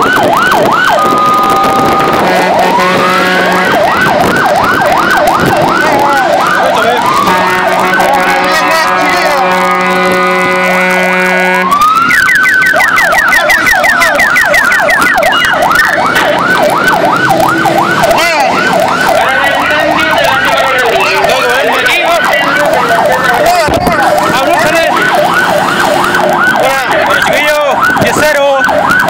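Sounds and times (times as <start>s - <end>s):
electronic siren yelp and warble: 0.0s - 29.0s
fire engine horn blast: 0.9s - 4.8s, 7.0s - 11.9s.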